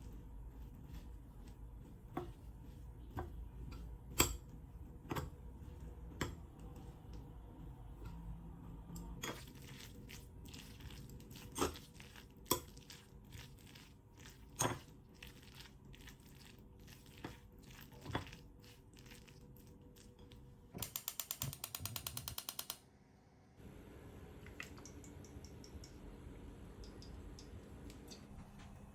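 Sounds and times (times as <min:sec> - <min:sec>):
rapid ratchet-like clicking: 0:20.8 - 0:22.8.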